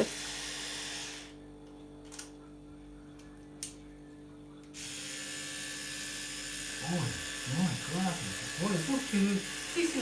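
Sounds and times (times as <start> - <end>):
electric toothbrush buzzing: 0.0 - 1.6, 4.7 - 10.0.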